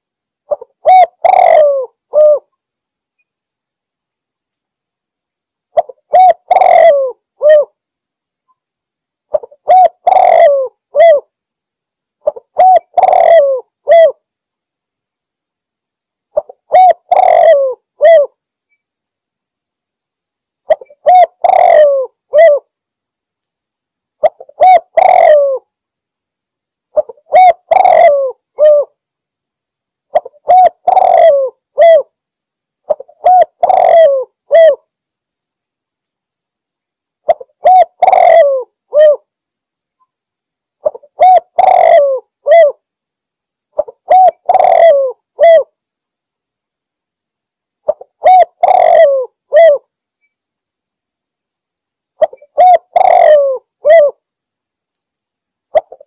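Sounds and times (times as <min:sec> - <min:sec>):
dove cooing: 0:00.5 - 0:02.5, 0:05.8 - 0:07.8, 0:09.3 - 0:11.3, 0:12.2 - 0:14.2, 0:16.4 - 0:18.4, 0:20.7 - 0:22.7, 0:24.2 - 0:25.7, 0:27.0 - 0:29.0, 0:30.1 - 0:32.1, 0:32.9 - 0:34.8, 0:37.3 - 0:39.3, 0:40.8 - 0:42.8, 0:43.8 - 0:45.7, 0:47.9 - 0:49.9, 0:52.2 - 0:54.2, 0:55.7 - 0:56.0.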